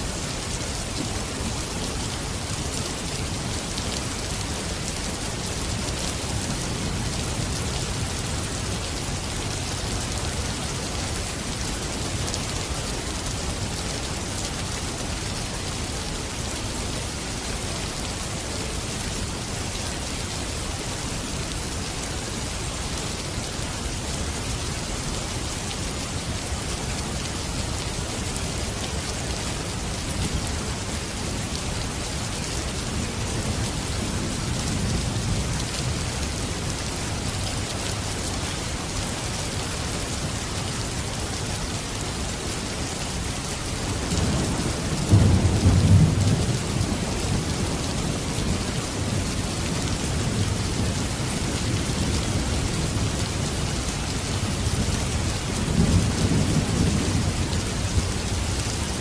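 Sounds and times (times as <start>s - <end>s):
steady rain falling: 0.0s - 59.0s
low rolling thunder: 44.2s - 48.6s.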